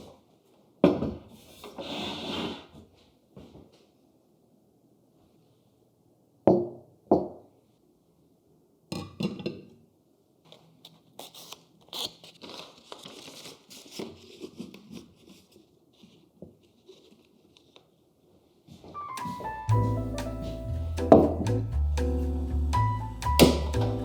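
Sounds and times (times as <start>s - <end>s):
packaging crinkling and tearing: 10.9s - 15.5s.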